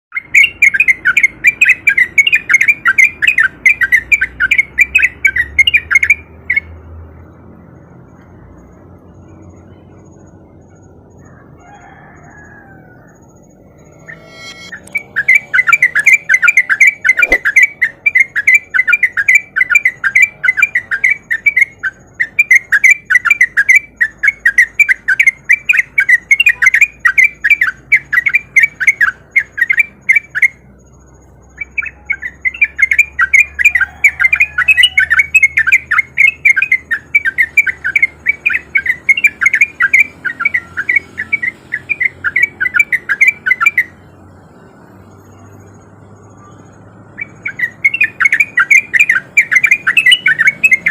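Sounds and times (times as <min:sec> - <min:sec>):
bulbul singing fast runs: 0:13.4 - 0:44.6, 0:46.8 - 0:50.9.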